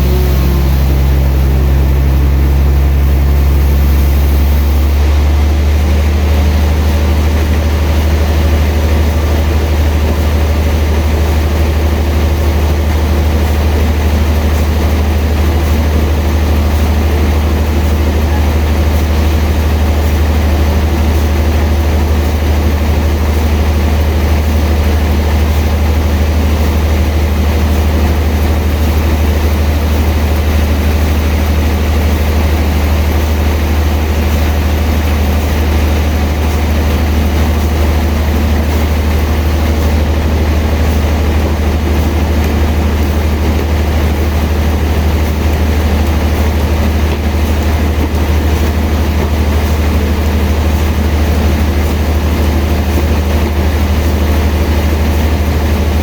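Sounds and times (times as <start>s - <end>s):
sawmill machinery droning: 0.0s - 56.0s.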